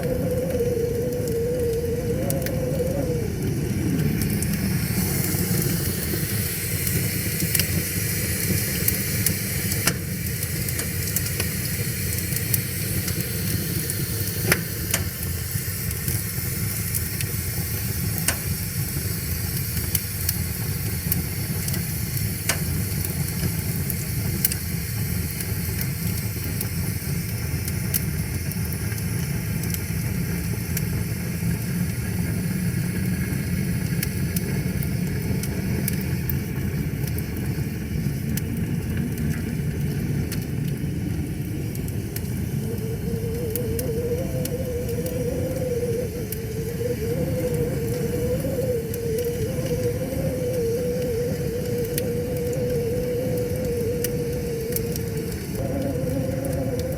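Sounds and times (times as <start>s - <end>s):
wavering tone sliding down: 0.0s - 6.2s, 42.2s - 56.9s
wood fire crackling and popping: 0.0s - 56.9s.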